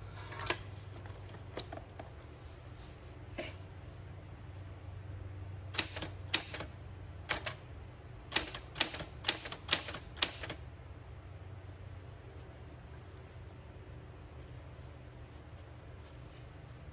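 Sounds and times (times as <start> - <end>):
manual typewriter keystrokes: 5.7 - 7.6, 8.3 - 10.6.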